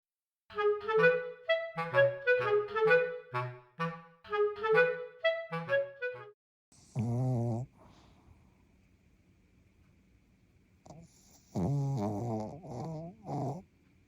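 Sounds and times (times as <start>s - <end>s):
bouncy melody: 0.5s - 6.4s.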